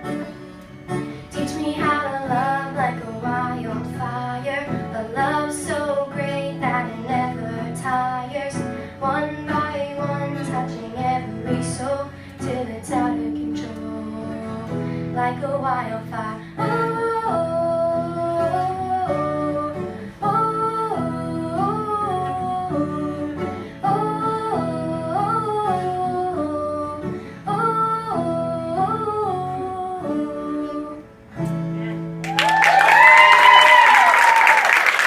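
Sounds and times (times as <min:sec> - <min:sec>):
acoustic guitar chords: 0:00.0 - 0:32.2
applause: 0:32.2 - 0:35.0.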